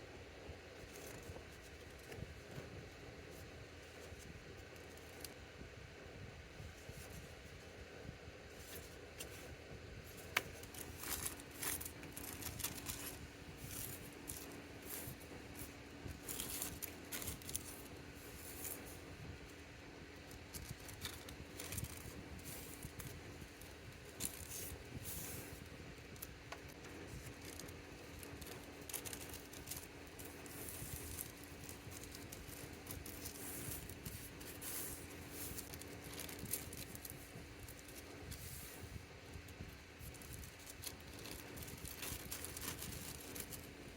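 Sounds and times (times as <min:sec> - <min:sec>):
faint steady hum: 0:00.0 - 0:43.9
plastic and paper rustling: 0:00.8 - 0:02.7, 0:08.5 - 0:19.6, 0:20.2 - 0:43.9.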